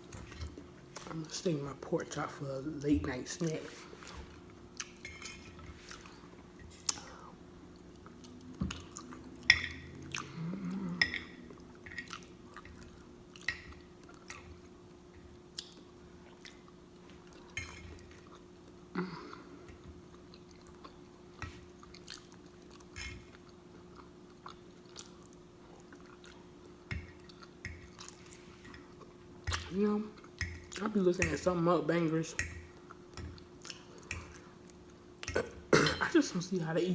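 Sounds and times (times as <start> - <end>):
faint steady hum: 0.0 - 36.9
person chewing food: 4.0 - 30.8, 32.7 - 35.4.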